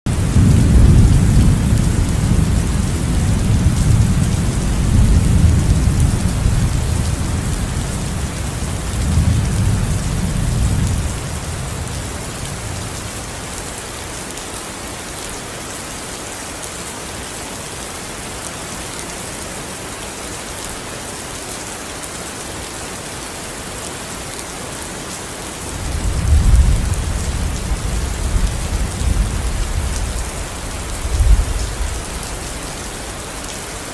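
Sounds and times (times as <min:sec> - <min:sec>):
thunder rumbling: 0:00.1 - 0:13.4, 0:25.7 - 0:32.7
rain hissing: 0:00.1 - 0:33.9.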